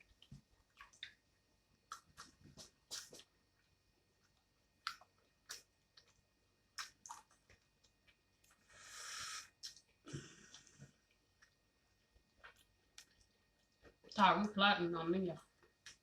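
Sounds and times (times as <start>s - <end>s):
mouth clicks and chewing: 0.0s - 1.2s, 1.9s - 3.3s, 4.2s - 8.7s, 9.5s - 11.6s, 12.3s - 14.2s
breath-like hiss: 8.7s - 10.5s.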